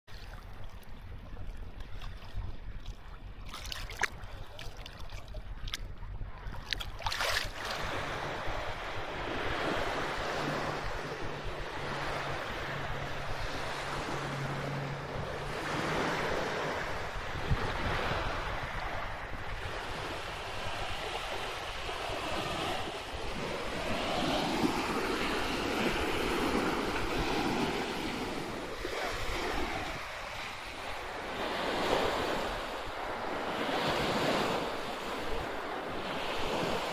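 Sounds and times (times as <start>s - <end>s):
wind rumbling on microphone: 0.2s - 36.9s
sea waves washing onto shore: 6.6s - 36.9s.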